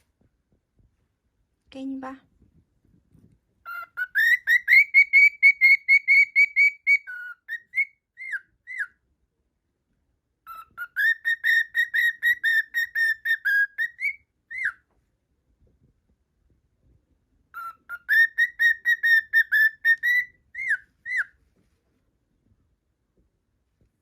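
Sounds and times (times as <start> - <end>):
cockatiel whistling: 3.6 - 9.0, 10.4 - 14.8, 17.5 - 21.4.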